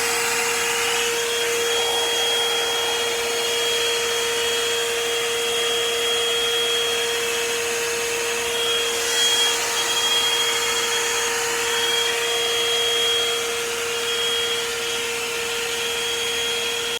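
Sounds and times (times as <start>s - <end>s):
high whine: 0.0s - 6.0s
hot-air brush blowing: 0.0s - 14.8s.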